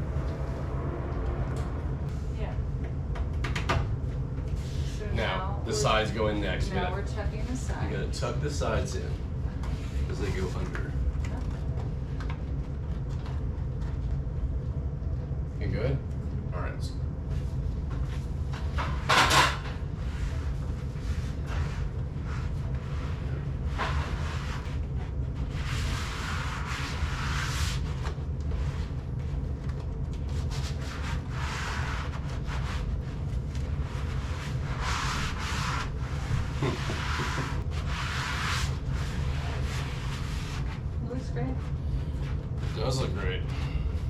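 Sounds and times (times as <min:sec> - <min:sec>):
hands rubbing insulation pad: 0:30.2 - 0:40.9.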